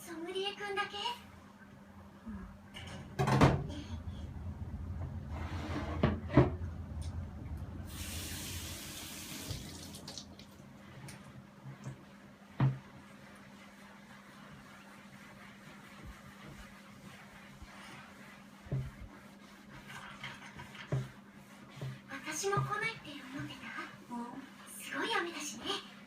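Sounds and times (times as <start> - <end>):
tap water running: 6.0 - 12.0.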